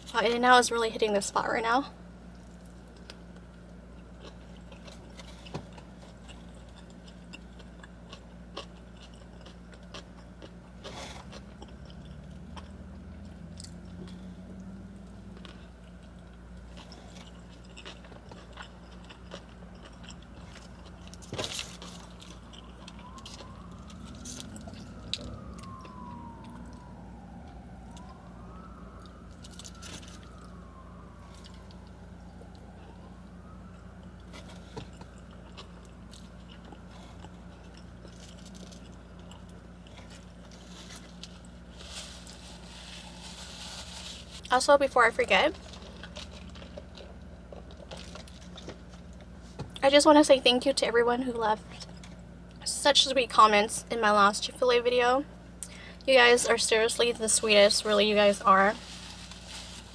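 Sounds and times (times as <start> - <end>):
steady low hum: 0.0 - 59.9
chewing and biting food: 2.2 - 44.2, 45.5 - 49.8
siren wailing: 20.6 - 39.2, 41.4 - 46.3, 52.6 - 59.9.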